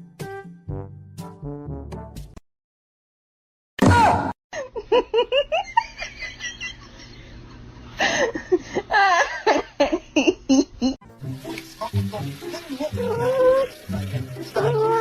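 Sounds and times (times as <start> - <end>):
person laughing: 4.6 - 11.0.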